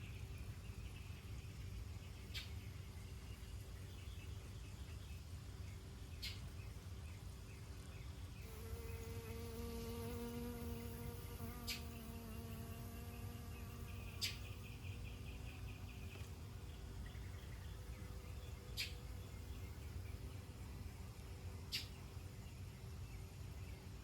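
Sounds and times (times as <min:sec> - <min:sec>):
flying insect buzzing: 0:08.4 - 0:16.4
high bird chirps: 0:11.4 - 0:16.3.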